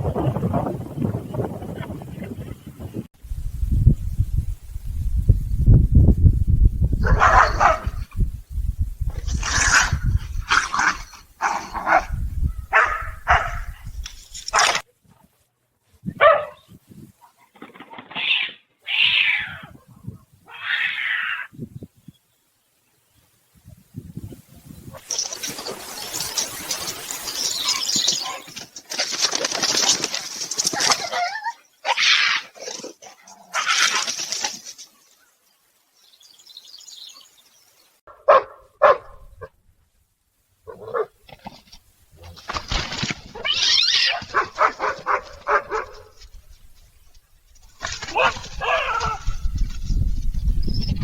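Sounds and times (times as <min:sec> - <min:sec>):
rustling noise: 0:00.0 - 0:18.6, 0:23.2 - 0:31.4, 0:32.5 - 0:35.8, 0:41.1 - 0:51.0
dog barking: 0:07.0 - 0:08.0, 0:11.4 - 0:13.7, 0:16.2 - 0:16.6, 0:38.1 - 0:39.5, 0:40.7 - 0:41.2, 0:44.1 - 0:46.1, 0:48.1 - 0:49.3
cat calling: 0:20.5 - 0:21.5, 0:43.4 - 0:44.4.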